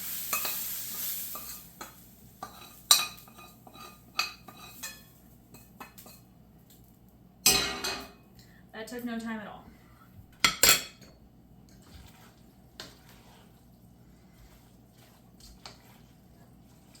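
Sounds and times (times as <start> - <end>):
light sizzling: 0.0 - 9.3, 10.9 - 17.0
utensil scraping a steel pan: 0.3 - 5.1.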